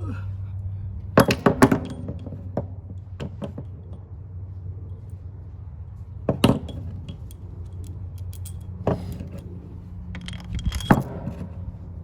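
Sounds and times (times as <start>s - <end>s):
steady low hum: 0.0s - 12.0s
metal tools clinking and rattling: 6.4s - 9.5s, 10.1s - 11.6s.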